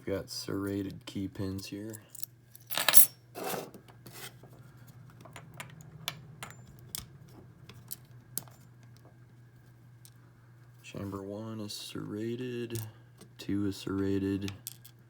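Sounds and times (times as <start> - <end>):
small metal parts clicking: 2.2 - 3.1
metal parts scraping rattle: 2.2 - 4.4.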